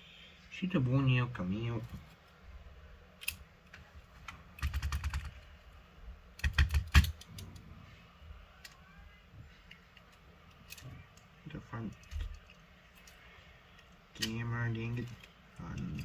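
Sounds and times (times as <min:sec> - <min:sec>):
tools clicking on phone parts: 0:03.2 - 0:03.4, 0:06.4 - 0:07.6.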